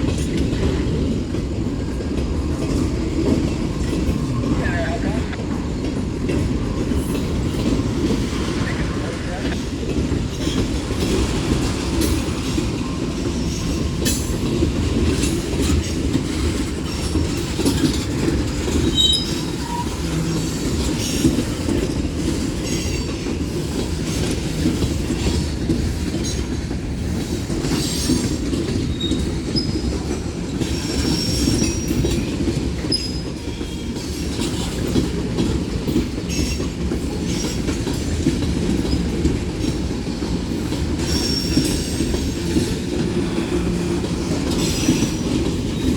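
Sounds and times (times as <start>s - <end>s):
train wheels rumbling on rail: 0.0s - 45.9s
high-pitched wheel squeals: 18.9s - 20.1s.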